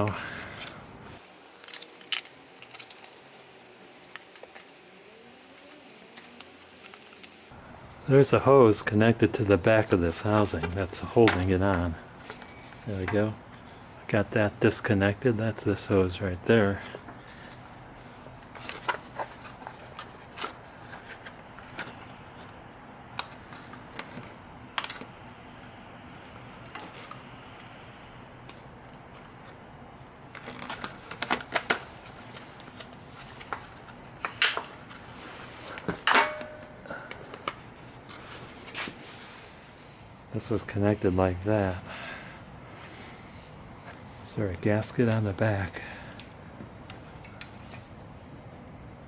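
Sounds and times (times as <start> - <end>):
faint background hum: 0.0 - 49.0
small clicks of handled parts: 0.6 - 4.8, 46.1 - 47.9.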